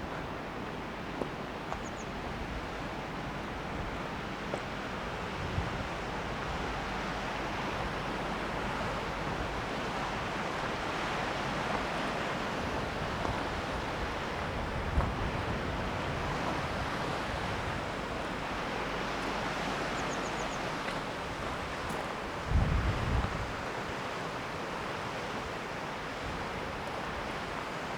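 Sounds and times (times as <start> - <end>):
wind buffeting microphone: 7.7 - 19.2, 21.0 - 23.8
strong wind blowing: 21.1 - 23.6.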